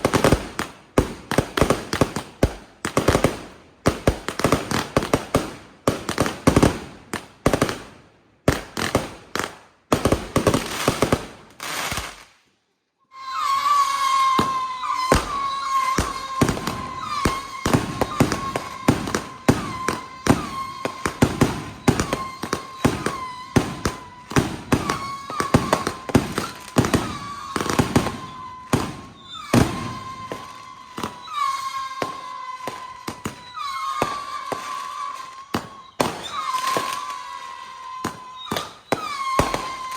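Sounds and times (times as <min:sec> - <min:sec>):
fireworks bangs: 0:00.0 - 0:12.4, 0:13.1 - 0:39.9
steady high tone: 0:13.1 - 0:28.7.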